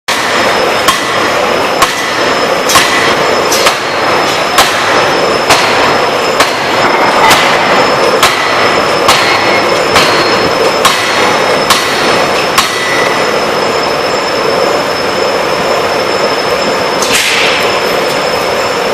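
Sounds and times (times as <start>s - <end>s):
forging hammer blows: 0.1s - 18.9s
loud machine din: 0.1s - 18.9s.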